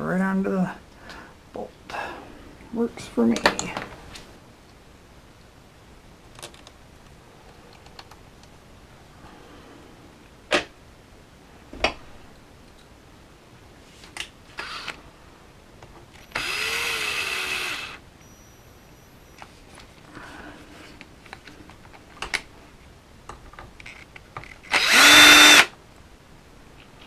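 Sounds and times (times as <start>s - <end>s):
cordless power driver whirring: 14.6s - 15.0s, 16.2s - 18.0s, 24.7s - 25.7s.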